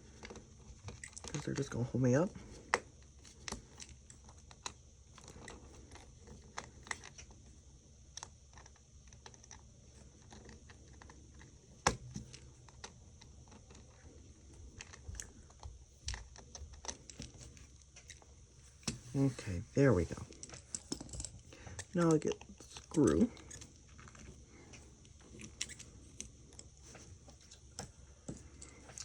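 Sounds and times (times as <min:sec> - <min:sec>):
small metal tools clicking: 0:20.3 - 0:23.7.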